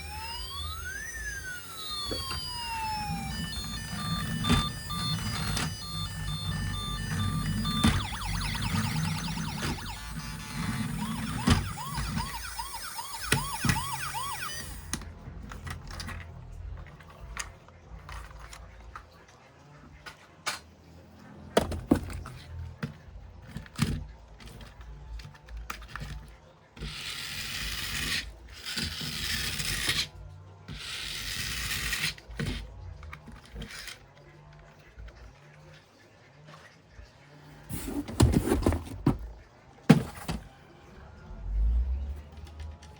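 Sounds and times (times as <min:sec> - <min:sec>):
toy siren wailing: 0:00.0 - 0:15.1.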